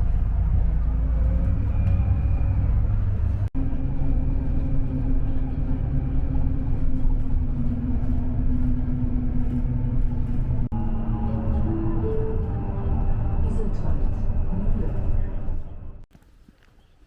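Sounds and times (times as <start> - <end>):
constant hum: 0.0 - 16.7
moving vehicle rumble: 0.0 - 17.0.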